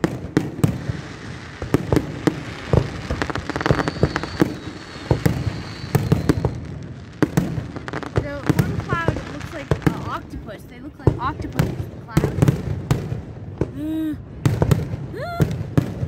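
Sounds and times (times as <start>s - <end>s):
fireworks banging: 0.0s - 16.0s
faint high whistle: 3.5s - 6.6s.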